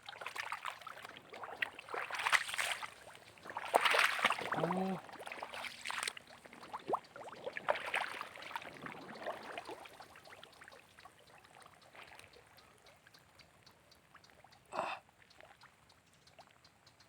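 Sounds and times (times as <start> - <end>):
water splashing and dripping: 0.0 - 12.5.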